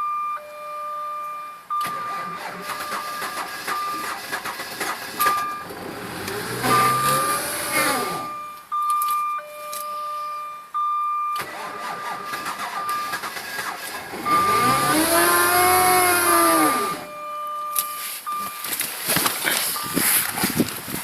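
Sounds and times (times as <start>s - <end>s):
car warning beep: 0.0s - 18.8s, 19.5s - 20.4s
car engine cranking: 1.8s - 8.5s, 11.4s - 17.1s.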